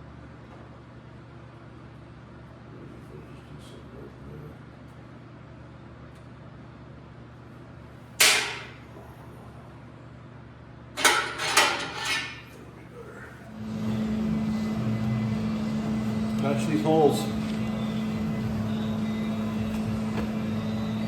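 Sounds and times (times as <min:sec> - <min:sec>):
steady machine hum: 0:00.0 - 0:21.0
metal clanks: 0:08.2 - 0:08.9, 0:11.0 - 0:12.5.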